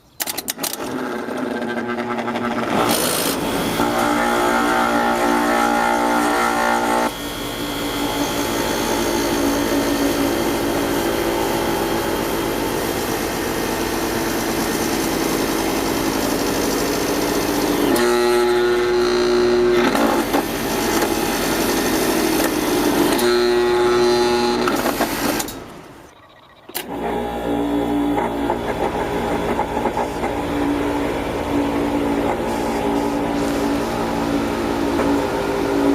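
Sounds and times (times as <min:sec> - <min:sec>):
compressor electrical hum: 0:03.3 - 0:35.9.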